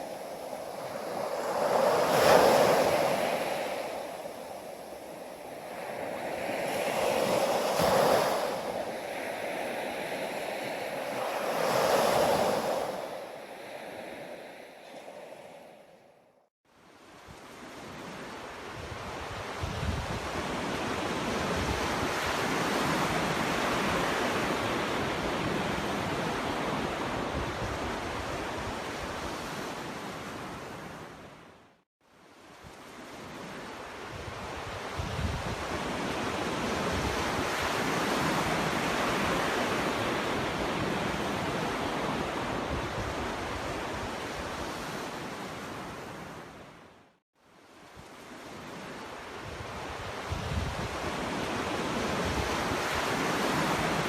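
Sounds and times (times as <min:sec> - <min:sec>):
sea waves breaking on beach: 0:00.0 - 0:16.2, 0:32.7 - 0:46.7, 0:47.9 - 0:54.0.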